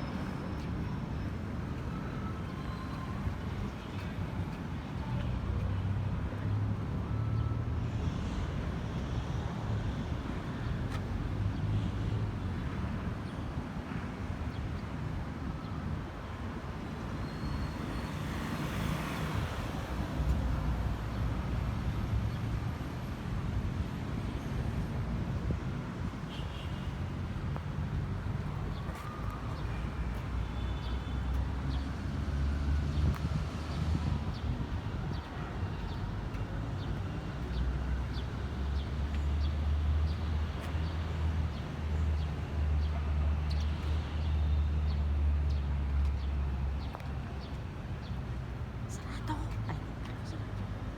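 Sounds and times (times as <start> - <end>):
rumble of road traffic: 0.0 - 50.9.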